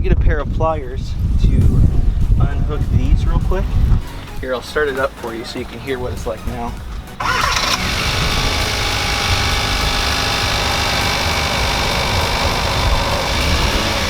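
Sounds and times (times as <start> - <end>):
car engine starting and idling: 7.2 - 14.0
high-pitched whir: 7.2 - 14.0.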